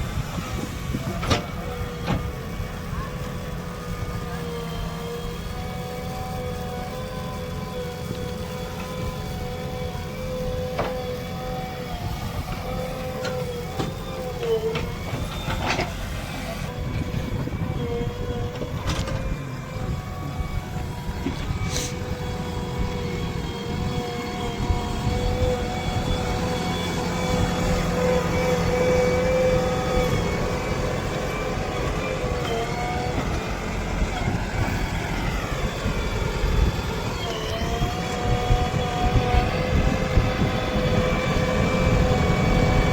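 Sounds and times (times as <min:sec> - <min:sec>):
heavy diesel machinery running: 0:00.0 - 0:42.9.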